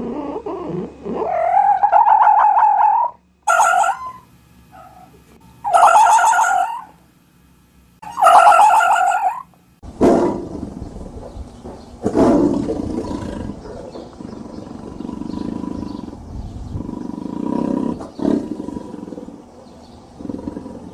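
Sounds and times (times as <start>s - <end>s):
low rumbling growls: 9.9s - 20.9s
big cat roaring: 12.0s - 19.4s, 20.2s - 20.9s.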